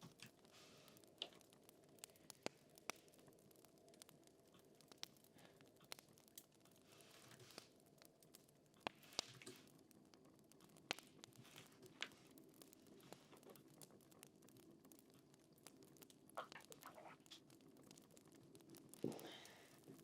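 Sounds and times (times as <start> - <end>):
fire crackling and popping: 0.0 - 20.0.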